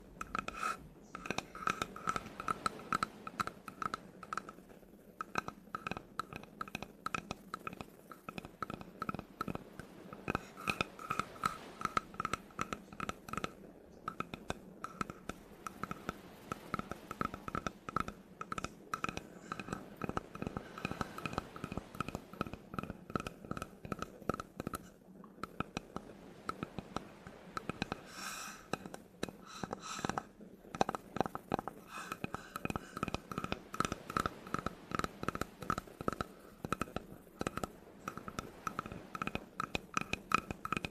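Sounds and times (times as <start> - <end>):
scratching on wood: 0.0 - 4.6.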